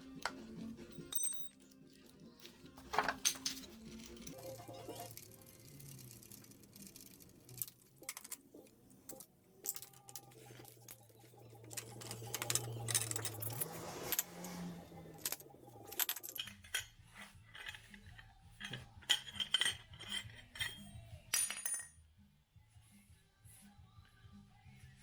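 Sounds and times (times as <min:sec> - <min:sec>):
metal scraping: 0:02.7 - 0:21.0.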